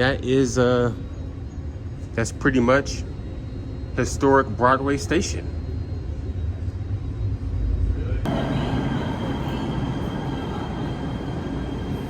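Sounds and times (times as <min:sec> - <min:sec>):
faint high whine: 0:00.0 - 0:12.0
train rumbling: 0:05.4 - 0:12.0.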